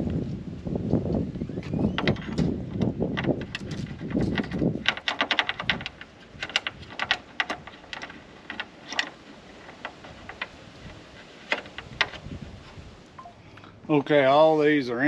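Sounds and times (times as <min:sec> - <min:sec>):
metal hardware clicking and rattling: 0:02.0 - 0:12.3.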